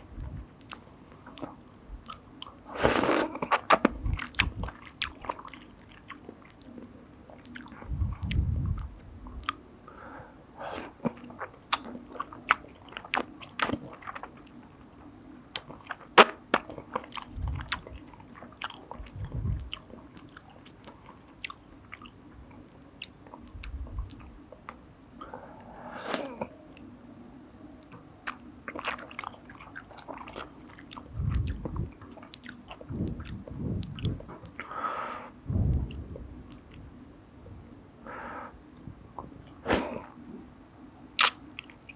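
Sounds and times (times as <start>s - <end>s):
faint steady hum: 0.0s - 41.9s
wet chewing and slurping: 0.2s - 9.6s, 10.8s - 14.6s, 15.5s - 22.2s, 28.2s - 34.7s, 41.2s - 41.9s
low thuds: 19.1s - 19.7s, 35.4s - 37.7s.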